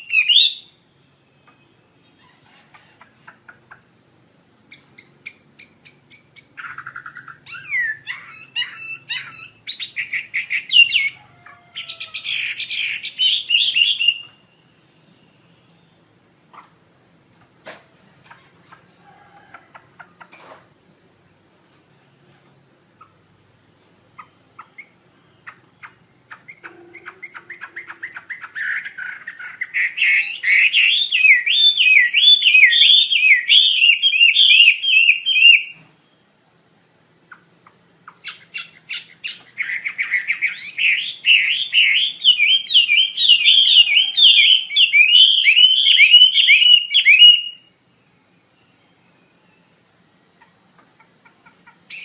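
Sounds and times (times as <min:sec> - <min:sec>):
bird singing whistled phrases: 0:00.0 - 0:00.8, 0:05.3 - 0:11.2, 0:11.9 - 0:16.0, 0:27.0 - 0:35.8, 0:38.3 - 0:47.7.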